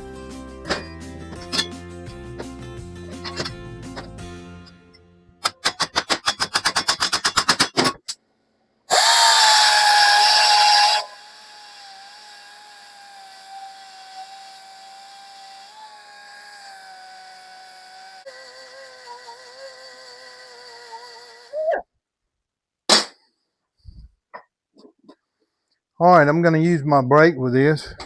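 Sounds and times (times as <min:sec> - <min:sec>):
power tool rapid stuttering: 0:05.4 - 0:08.0, 0:08.9 - 0:21.6
power tool high whirring whine: 0:08.9 - 0:21.6.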